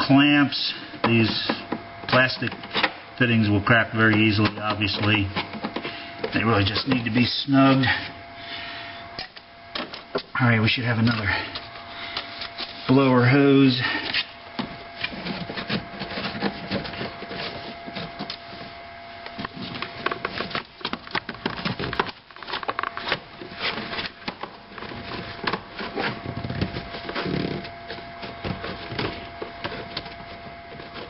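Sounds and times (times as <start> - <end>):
rubber hose rubbing: 24.8 - 31.0.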